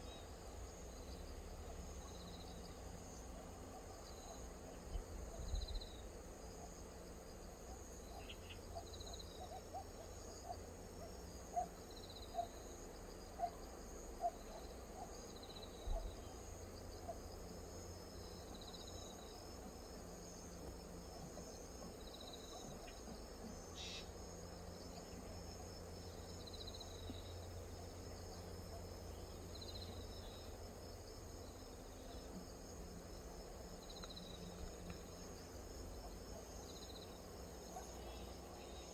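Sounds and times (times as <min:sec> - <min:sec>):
insects trilling: 0:00.0 - 0:38.9
short insect chirps: 0:17.4 - 0:38.9.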